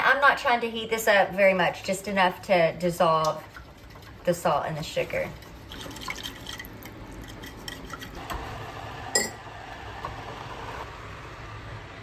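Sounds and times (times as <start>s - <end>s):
utensil stirring in a pot: 1.4s - 10.9s
sharp ringing clink: 9.2s - 9.4s.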